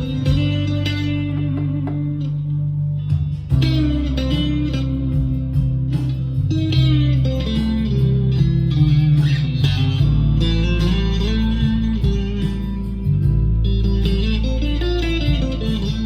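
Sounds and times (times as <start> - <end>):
backing track with bass line: 0.0 - 16.0
electric guitar through amplifier: 0.0 - 16.0.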